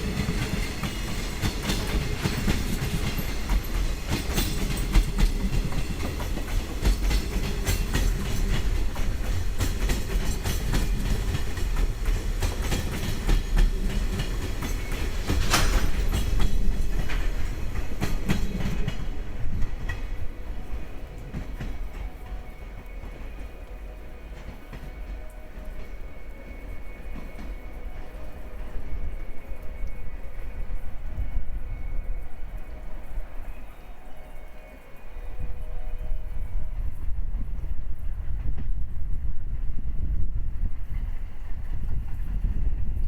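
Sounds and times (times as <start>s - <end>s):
wheels clicking over rail joints: 0.0s - 31.4s
freight train rumbling: 0.0s - 43.0s.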